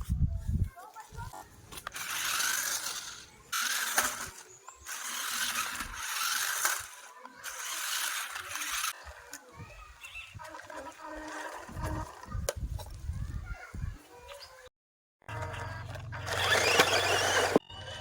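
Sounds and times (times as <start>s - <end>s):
small gear motors whirring: 1.8s - 12.5s, 15.3s - 18.0s.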